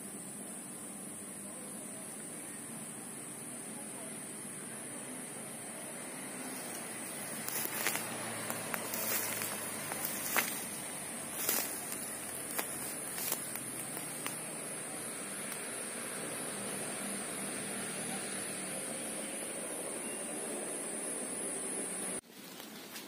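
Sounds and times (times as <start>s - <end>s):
snaps and crackles: 11.4s - 14.5s.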